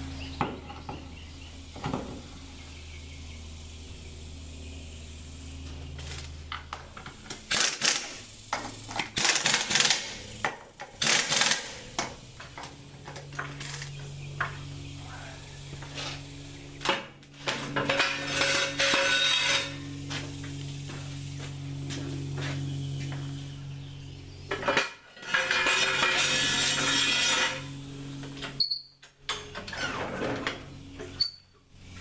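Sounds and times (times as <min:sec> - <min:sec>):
low hum: 0:00.0 - 0:32.0
metal tools clanking: 0:17.7 - 0:19.8, 0:24.5 - 0:27.6.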